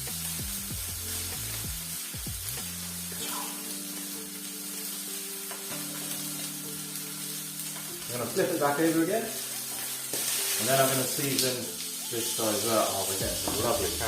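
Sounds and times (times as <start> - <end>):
steak sizzling in a pan: 0.0 - 14.0.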